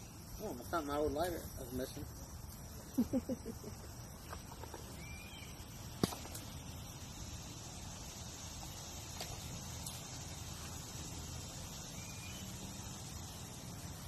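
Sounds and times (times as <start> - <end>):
low background noise: 0.0 - 14.0.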